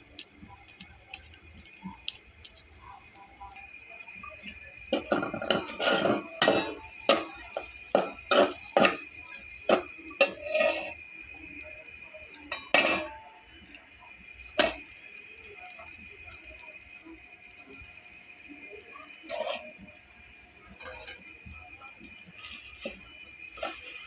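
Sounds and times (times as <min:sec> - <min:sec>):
metal utensil scraping cookware: 0:04.9 - 0:11.0, 0:12.4 - 0:13.3, 0:19.2 - 0:19.9, 0:20.6 - 0:21.6, 0:22.2 - 0:24.0.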